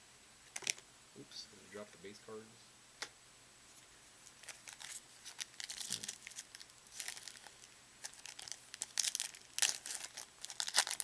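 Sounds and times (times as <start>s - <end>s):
cards being handled: 3.7s - 11.0s
foil wrapper crinkling and tearing: 4.2s - 11.0s.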